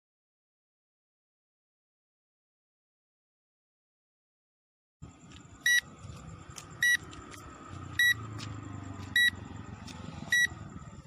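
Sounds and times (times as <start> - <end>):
high-pitched buzzer beeps: 5.6 - 5.9, 6.8 - 7.0, 8.0 - 8.2, 9.1 - 9.4, 10.3 - 10.6.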